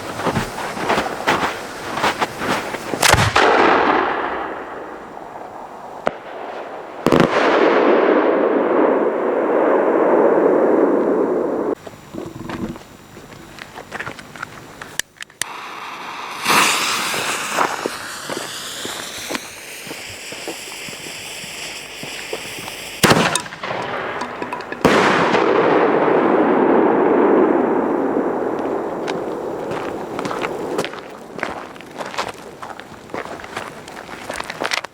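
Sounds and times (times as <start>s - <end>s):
firecrackers cracking: 0.3s - 9.1s, 14.8s - 32.8s
firework hissing: 15.4s - 24.1s, 27.1s - 31.4s
loud bangs: 23.0s - 28.0s.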